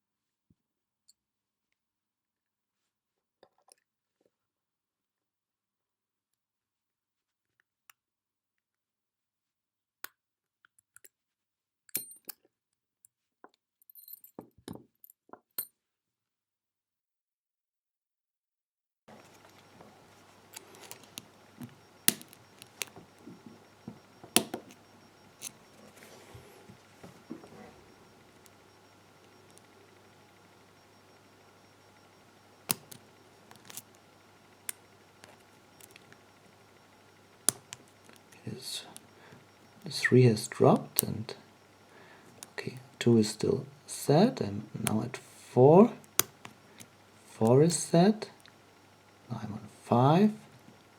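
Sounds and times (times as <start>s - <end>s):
lock picks clicking: 19.2s - 25.7s, 32.2s - 34.0s, 46.0s - 46.9s
lock pick clicking in lock: 20.5s - 23.0s, 24.3s - 24.8s.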